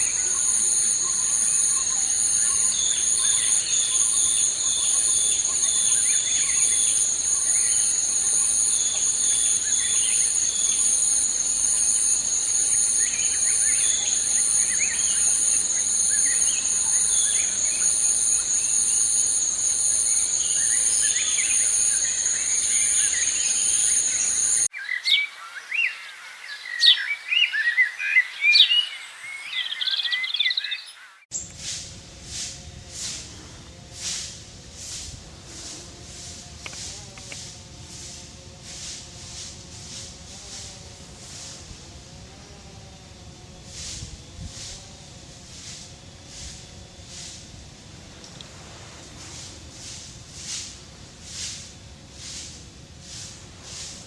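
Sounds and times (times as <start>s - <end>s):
birds chirping: 0.0s - 24.7s
insects droning: 0.0s - 24.9s, 26.6s - 54.0s.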